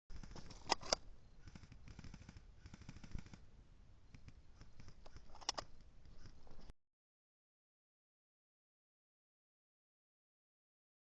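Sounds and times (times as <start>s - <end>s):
fainter distant shots: 0.1s - 6.4s.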